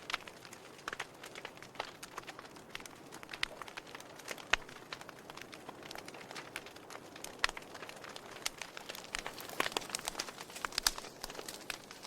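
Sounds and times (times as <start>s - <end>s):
wood fire crackling: 0.0s - 12.0s.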